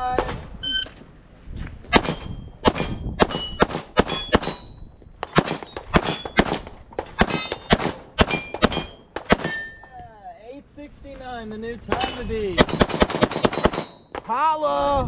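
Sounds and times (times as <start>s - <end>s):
rapid pistol shots: 1.9s - 9.8s, 12.6s - 14.2s
steel targets ringing: 2.0s - 6.5s, 7.2s - 9.9s.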